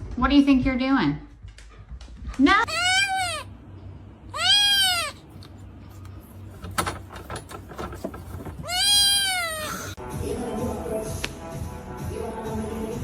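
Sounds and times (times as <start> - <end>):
cat meowing: 2.6 - 3.5, 4.3 - 5.2, 8.6 - 10.0
light knocks and rustling: 6.5 - 8.7.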